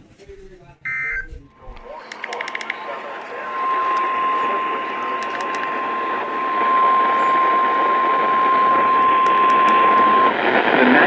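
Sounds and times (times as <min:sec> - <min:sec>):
radio static: 0:00.0 - 0:11.0
steady warning beep: 0:00.9 - 0:01.9.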